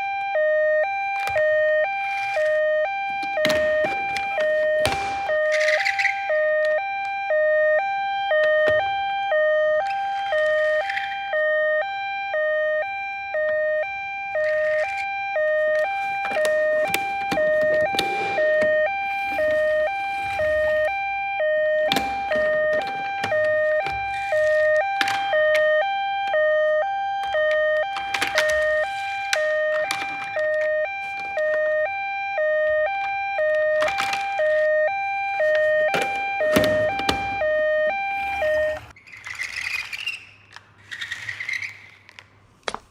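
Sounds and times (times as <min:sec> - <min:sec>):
toy two-tone siren: 0:00.0 - 0:40.2
plastic toy clicks and knocks: 0:29.3 - 0:30.6.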